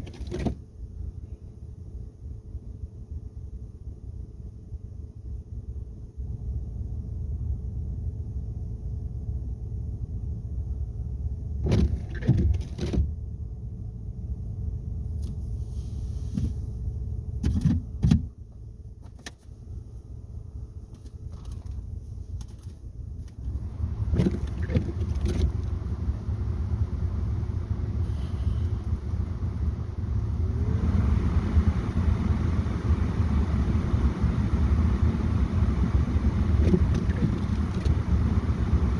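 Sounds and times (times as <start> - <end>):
car engine idling: 13.1 - 38.9.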